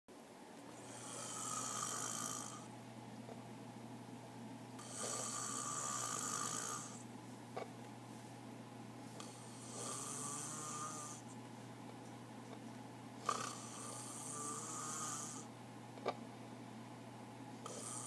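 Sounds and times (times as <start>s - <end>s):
steady low hum: 0.1s - 18.0s
man snoring: 0.8s - 2.7s, 4.8s - 7.0s, 9.2s - 11.2s, 13.2s - 15.5s, 17.6s - 18.0s.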